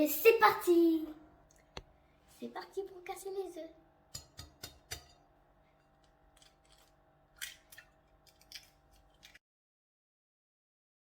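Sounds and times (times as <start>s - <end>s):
egg shell tapping against bowl: 4.1s - 5.2s.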